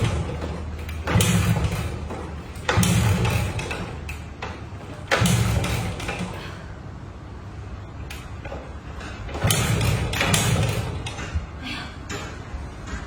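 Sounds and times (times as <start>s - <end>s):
engine turning over without catching: 0.0s - 6.6s, 9.3s - 11.3s.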